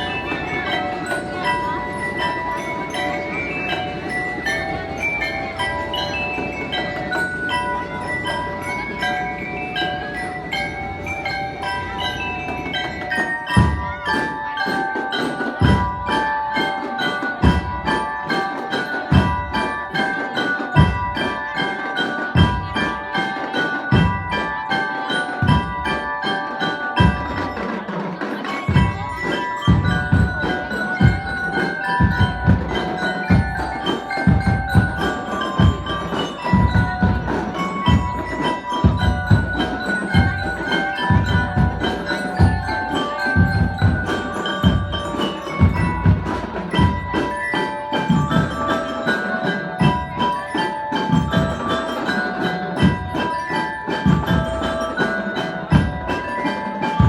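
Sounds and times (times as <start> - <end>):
bell lyres melody: 0.0 - 57.0
bass drum beats: 28.6 - 47.5.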